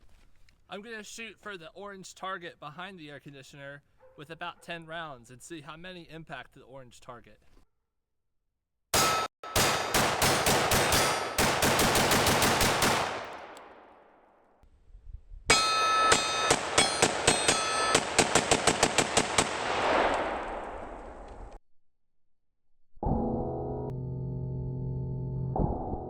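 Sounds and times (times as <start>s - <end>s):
bullets ringing on steel: 9.0s - 12.4s, 15.5s - 18.2s
rapid gunfire: 9.5s - 13.9s, 16.1s - 20.5s.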